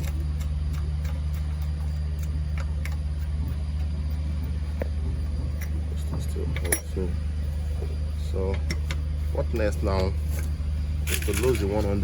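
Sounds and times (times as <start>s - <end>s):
spanner clicking on metal: 0.0s - 7.0s
low machine hum: 0.0s - 12.0s.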